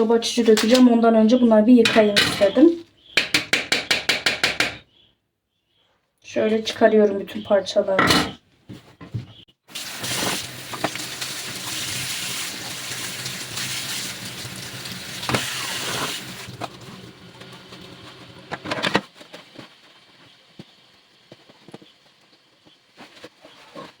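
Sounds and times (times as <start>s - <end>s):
parts knocking against sink: 3.2s - 4.8s.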